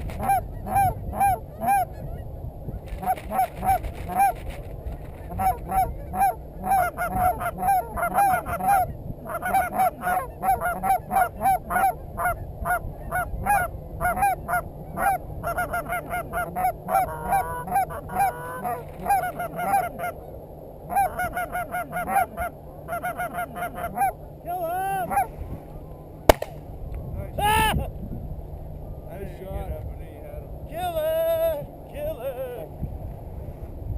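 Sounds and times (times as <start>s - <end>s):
goose honking and clucking: 0.0s - 2.0s, 5.3s - 20.3s, 20.9s - 24.2s.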